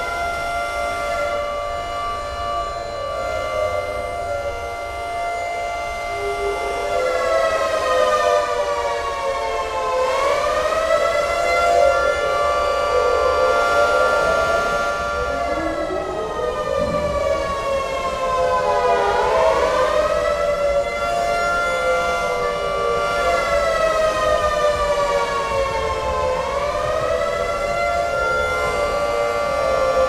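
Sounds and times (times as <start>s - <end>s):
air raid sirens wailing: 0.0s - 30.0s.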